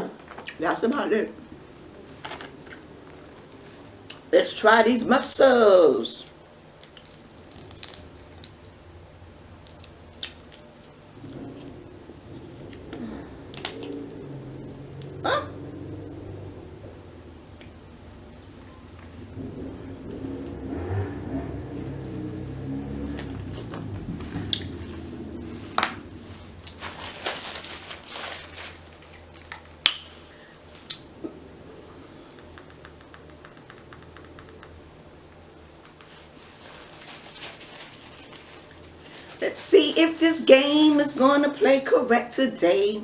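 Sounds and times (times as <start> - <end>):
low hum: 5.0 - 41.3
wet chewing and squishing: 6.8 - 8.7, 23.4 - 25.9, 28.4 - 31.1.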